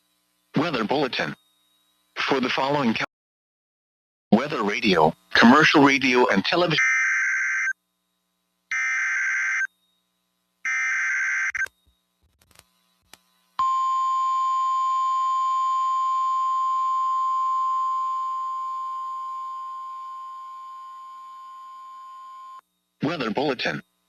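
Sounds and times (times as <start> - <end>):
steady high alarm tone: 5.4 - 7.8, 8.7 - 11.7, 13.6 - 22.9.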